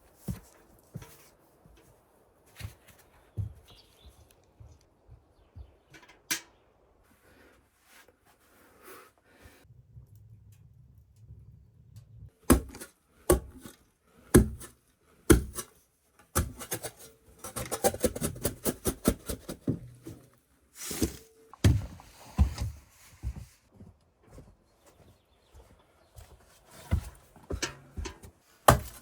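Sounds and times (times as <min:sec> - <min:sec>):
rustle: 0:00.0 - 0:04.9.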